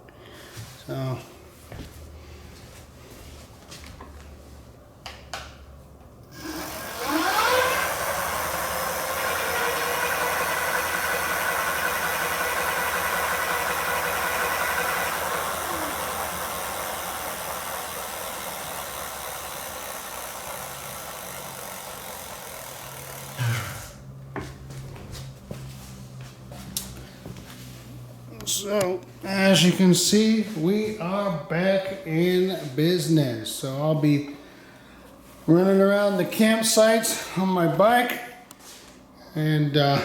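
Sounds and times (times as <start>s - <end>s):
electric motor whining: 6.3s - 24.0s.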